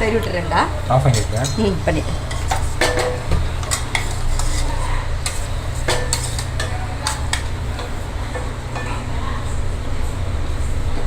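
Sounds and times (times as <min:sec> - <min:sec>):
metal spoon scraping pots: 0:00.2 - 0:09.4.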